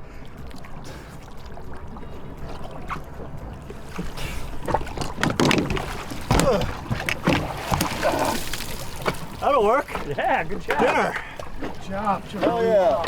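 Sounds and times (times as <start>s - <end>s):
low rumble of wind and water: 0.0s - 13.0s
sharp knocks or splashes: 3.7s - 13.0s.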